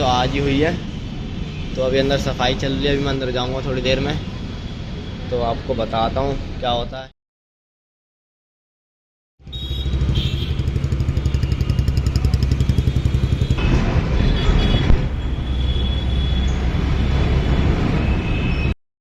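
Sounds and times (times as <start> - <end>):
motorcycle engine idling: 9.5 - 13.6.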